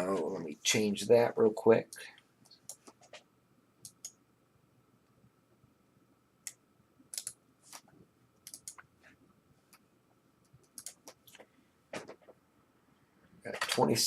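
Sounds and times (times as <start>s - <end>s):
faint keyboard typing: 1.9s - 4.2s, 6.4s - 12.4s.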